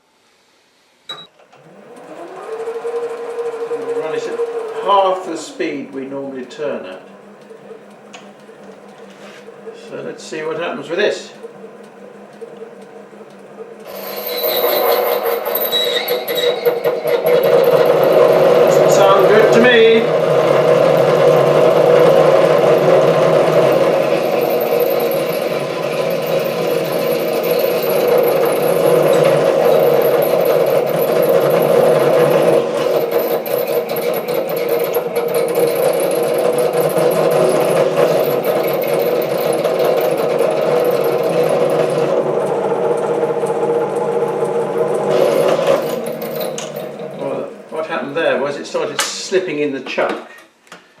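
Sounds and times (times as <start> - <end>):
lathe motor and gear whine: 1.1 - 49.6
grating metal cutting noise: 1.7 - 49.4.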